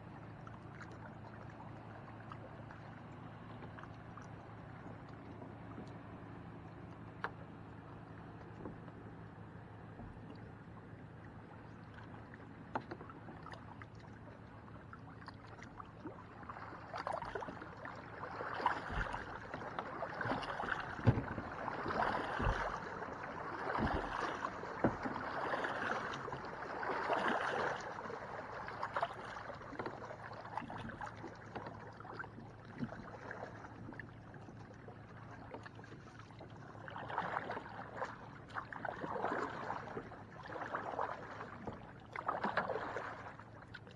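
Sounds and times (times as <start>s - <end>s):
water sloshing against kayak: 0.0s - 43.9s
dull knocks against hull: 18.6s - 26.4s.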